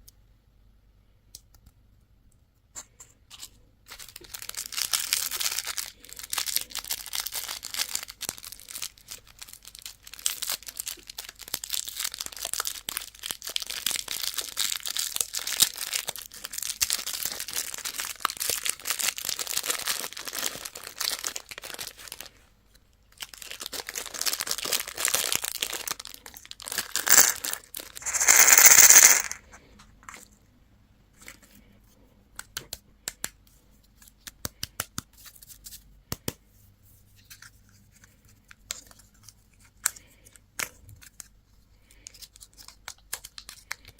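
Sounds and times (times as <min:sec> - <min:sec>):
plastic wrapper crackling: 0:03.9 - 0:22.3, 0:23.1 - 0:29.4.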